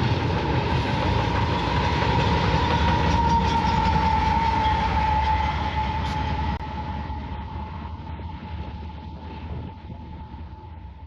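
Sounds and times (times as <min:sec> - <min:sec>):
freight train rumbling: 0:00.0 - 0:11.0
steady high whine: 0:04.4 - 0:11.0.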